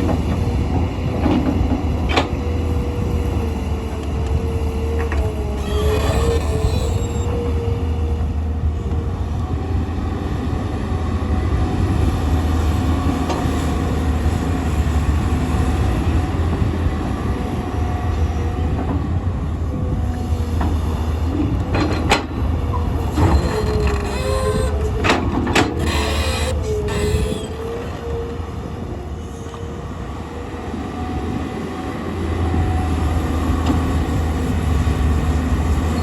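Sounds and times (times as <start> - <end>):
excavator diesel engine droning: 0.0 - 36.0
wavering high squeal: 5.6 - 7.4.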